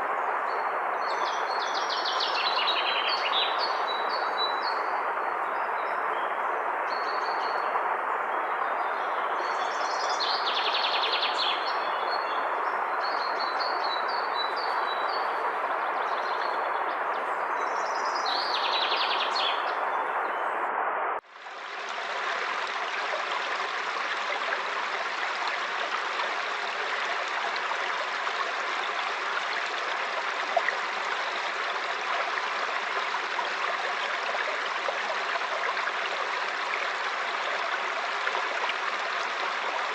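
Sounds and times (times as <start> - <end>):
river water rushing: 21.3 - 39.9.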